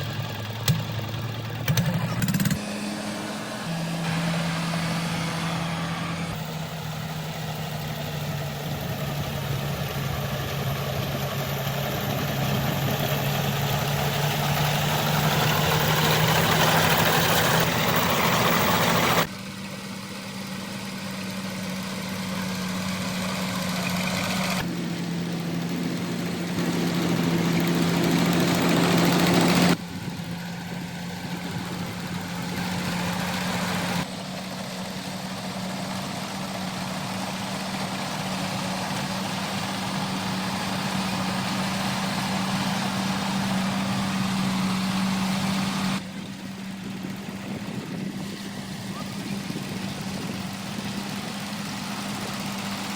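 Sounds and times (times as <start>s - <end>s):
combine harvester engine humming: 0.0s - 52.9s.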